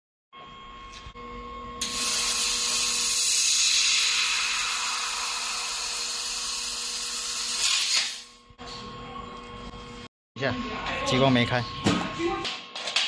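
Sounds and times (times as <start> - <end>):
machine electrical hum: 0.4 - 13.0
laser welder hissing: 1.8 - 8.4.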